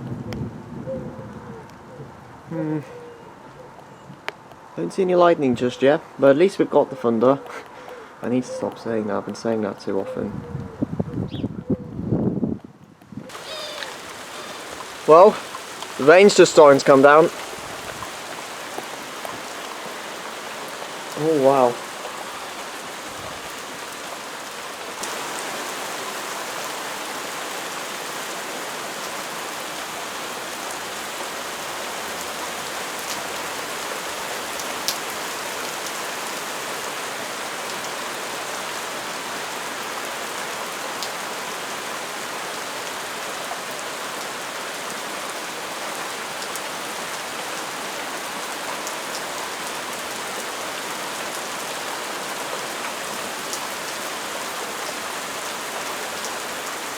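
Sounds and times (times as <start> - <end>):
sharp taps of raindrops: 13.0 - 26.0, 34.4 - 36.0
rain pouring: 13.3 - 56.9.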